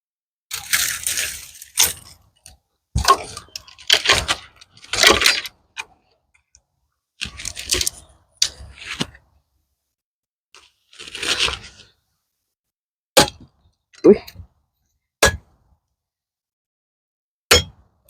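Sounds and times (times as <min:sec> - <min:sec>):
branches and twigs clattering: 0:00.5 - 0:05.6.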